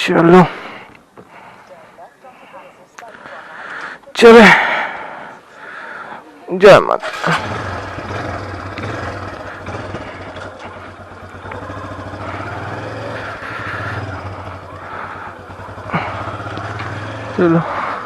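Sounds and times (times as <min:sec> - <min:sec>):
motorcycle engine idling: 0:07.0 - 0:18.0.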